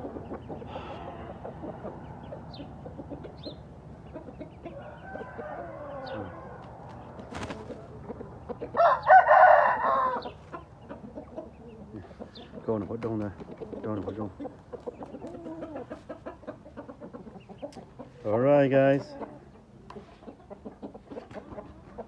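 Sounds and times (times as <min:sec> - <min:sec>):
chickens calling: 0:00.0 - 0:22.0
rooster crowing: 0:04.7 - 0:06.6, 0:08.8 - 0:10.4.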